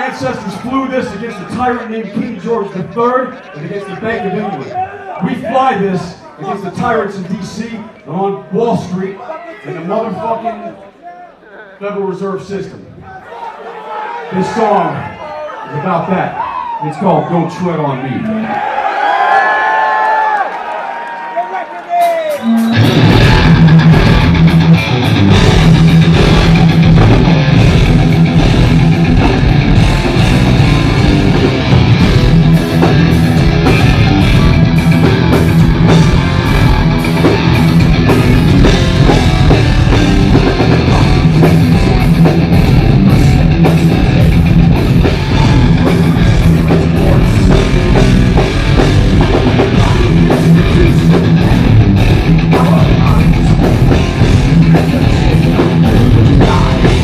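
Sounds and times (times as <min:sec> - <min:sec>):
distorted electric guitars: 0:22.0 - 0:57.0
drum kit: 0:22.0 - 0:57.0.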